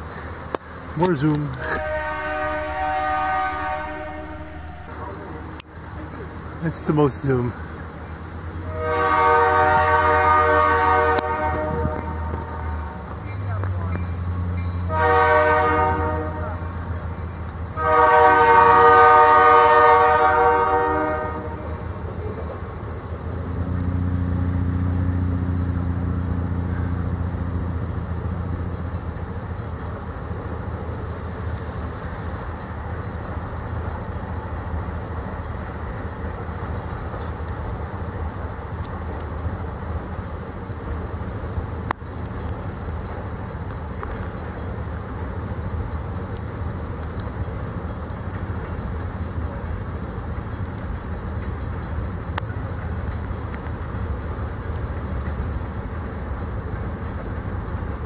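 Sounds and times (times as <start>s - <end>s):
locomotive engine droning: 0.0s - 58.0s
faint ticks: 26.6s - 29.9s, 36.7s - 39.5s, 41.8s - 53.8s.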